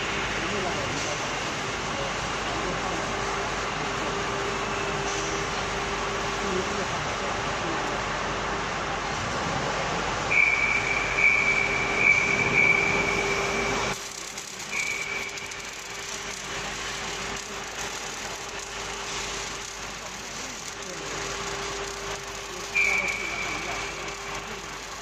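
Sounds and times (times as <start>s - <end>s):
machinery humming: 0.0s - 25.0s
high whine: 10.2s - 25.0s.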